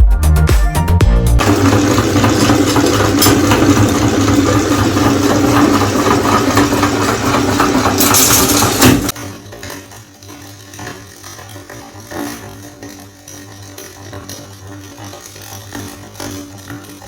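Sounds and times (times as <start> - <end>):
meat grinder motor humming: 1.4 - 17.0
marbles crunching and rattling: 1.5 - 9.2.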